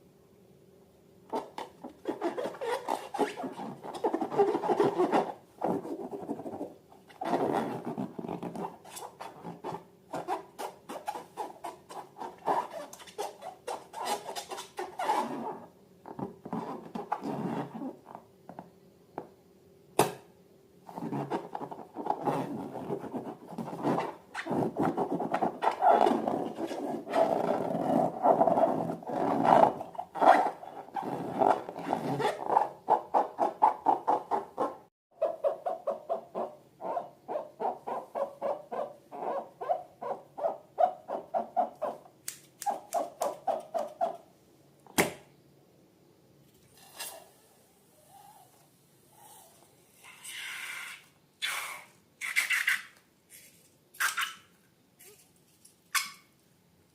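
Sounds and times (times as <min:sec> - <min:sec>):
sharp snap: 0:20.0 - 0:20.3, 0:45.0 - 0:45.3.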